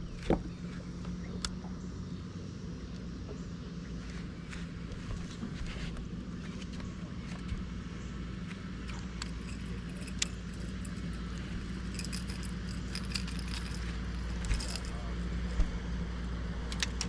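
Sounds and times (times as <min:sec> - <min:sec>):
motor humming: 0:00.0 - 0:17.0
jingling rattles: 0:08.8 - 0:15.6.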